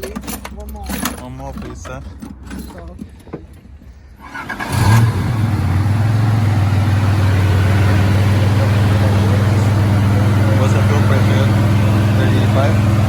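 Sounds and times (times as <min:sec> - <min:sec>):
car engine starting and idling: 0:04.2 - 0:13.0.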